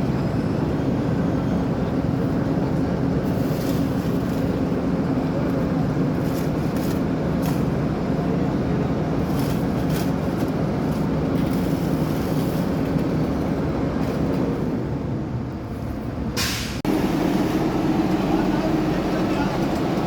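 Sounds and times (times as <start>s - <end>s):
heavy machinery engine humming: 0.0s - 20.0s
short hissing: 16.4s - 16.8s.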